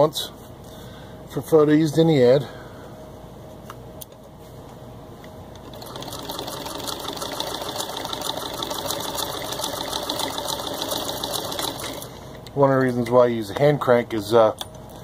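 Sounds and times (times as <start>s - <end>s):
hand-cranked sewing machine stitching: 5.6s - 12.1s.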